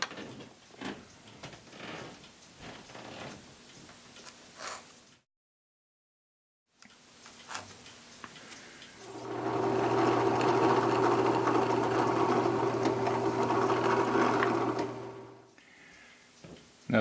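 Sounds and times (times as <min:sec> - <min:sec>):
bandsaw motor humming: 0:09.1 - 0:15.4.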